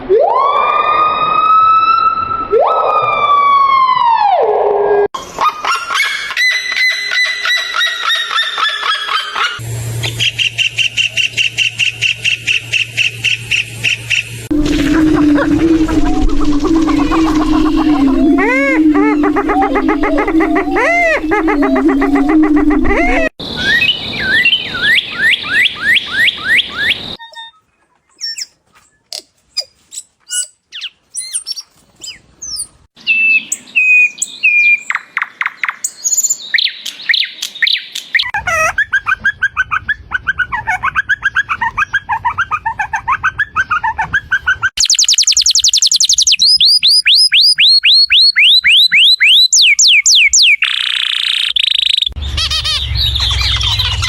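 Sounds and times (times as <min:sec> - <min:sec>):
birds singing: 0:05.9 - 0:14.5, 0:16.4 - 0:29.1, 0:43.2 - 0:54.0
falling bird chirps: 0:06.8 - 0:40.0, 0:44.8 - 0:54.0.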